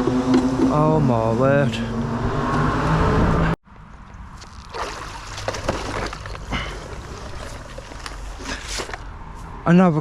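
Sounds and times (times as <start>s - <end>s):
water sloshing and splashing: 4.1s - 9.0s.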